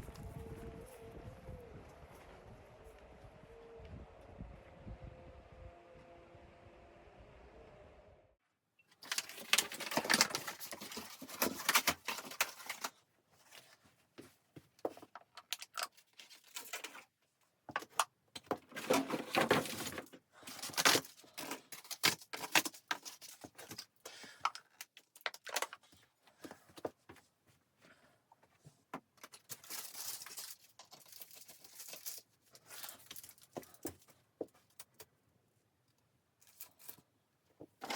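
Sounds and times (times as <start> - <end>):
crackling crinkling handling noise: 8.9 - 35.2, 35.8 - 37.9.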